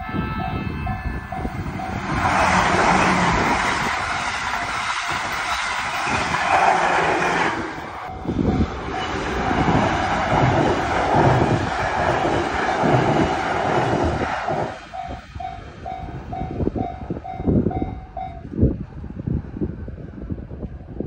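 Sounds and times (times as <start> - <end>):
level crossing warning bell: 0.0 - 4.7, 8.0 - 8.6.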